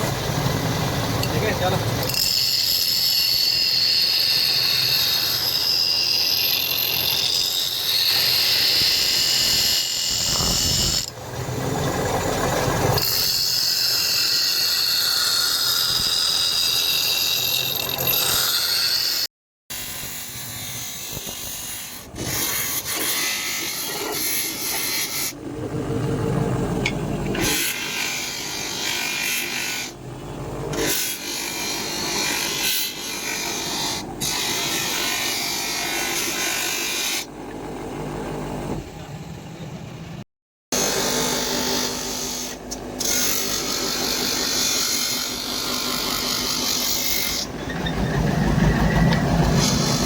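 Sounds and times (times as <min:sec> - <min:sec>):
power grinder whining on steel: 0:00.0 - 0:37.3, 0:40.8 - 0:50.0
uneven tool sound: 0:19.7 - 0:25.4.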